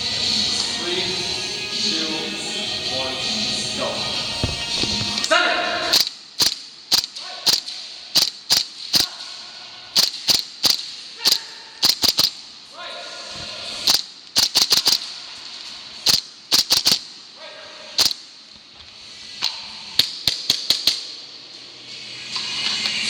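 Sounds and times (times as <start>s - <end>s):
airsoft gun shots: 4.4s - 9.3s, 10.0s - 12.4s, 13.8s - 15.2s, 16.0s - 17.2s, 18.0s - 18.3s, 19.4s - 21.2s.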